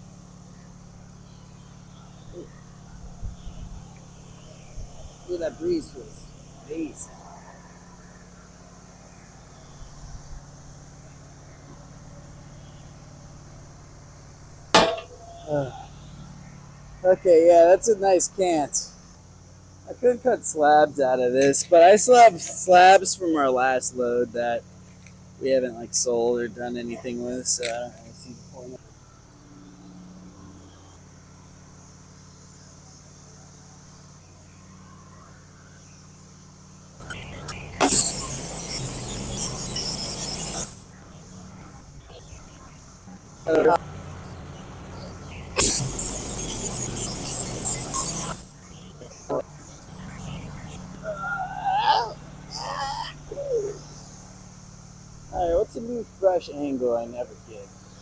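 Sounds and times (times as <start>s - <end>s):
band sawmill running: 0.0s - 19.2s, 19.8s - 30.1s, 36.9s - 58.0s.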